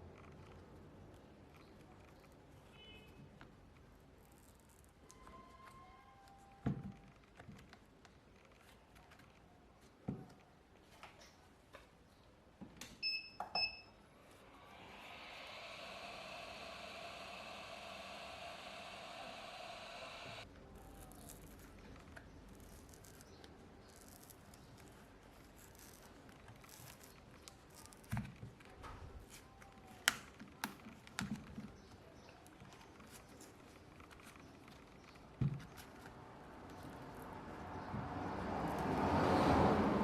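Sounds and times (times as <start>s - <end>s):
steady rushing noise: 14.4s - 20.4s.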